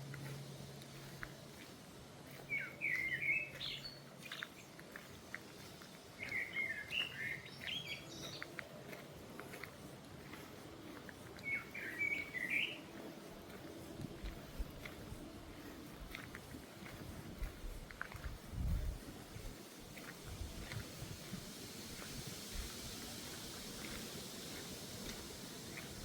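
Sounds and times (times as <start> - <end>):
faint footsteps on a path: 0.0 - 26.0
songbird warbling: 2.4 - 4.5, 6.2 - 8.4, 11.4 - 12.8.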